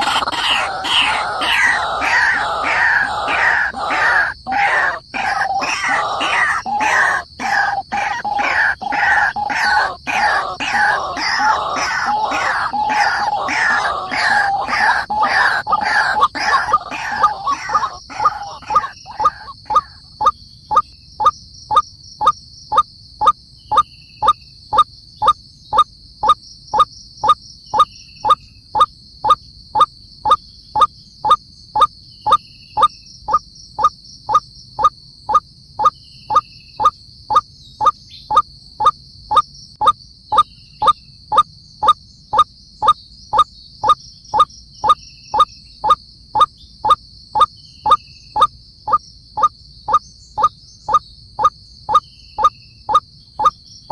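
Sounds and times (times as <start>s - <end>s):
bird croaking calls: 0.0s - 21.3s.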